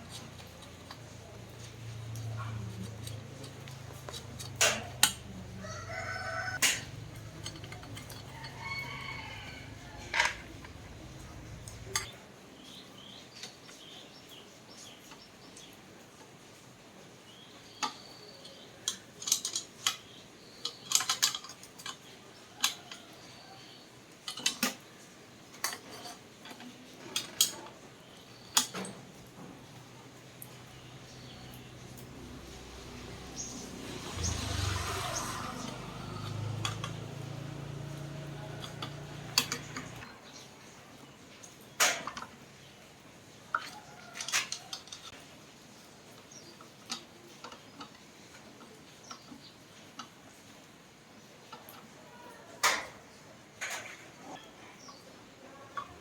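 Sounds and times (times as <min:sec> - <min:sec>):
rooster crowing: 0:05.4 - 0:12.0
sharp metallic clicks and clinks: 0:06.6 - 0:12.1.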